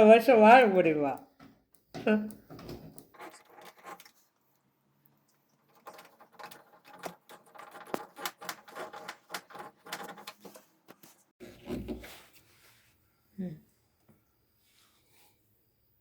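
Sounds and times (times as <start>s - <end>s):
small clicks taps and rattles: 5.3s - 11.0s.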